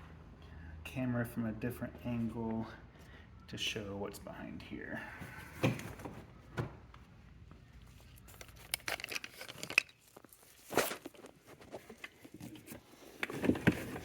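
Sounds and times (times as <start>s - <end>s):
handling clicks and rustles: 5.6s - 14.0s.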